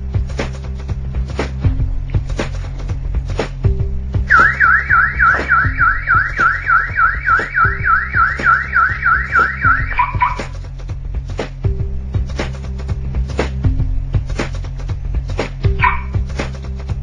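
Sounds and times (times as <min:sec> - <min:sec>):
background music: 0:00.0 - 0:17.0
car alarm siren sweeps: 0:04.3 - 0:10.5, 0:15.8 - 0:16.2.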